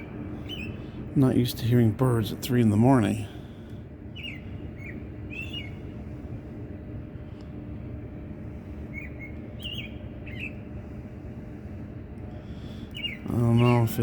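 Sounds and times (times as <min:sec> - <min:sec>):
bird chirping: 0:00.0 - 0:00.8, 0:04.1 - 0:05.8, 0:08.9 - 0:10.7, 0:12.9 - 0:14.0
low background rumble: 0:00.0 - 0:14.0.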